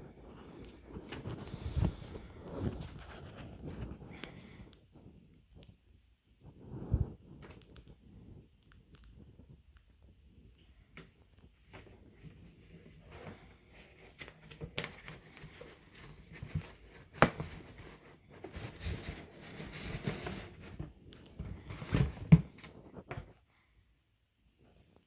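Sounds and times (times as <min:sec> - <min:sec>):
packaging rustling and crinkling: 0:11.4 - 0:23.4.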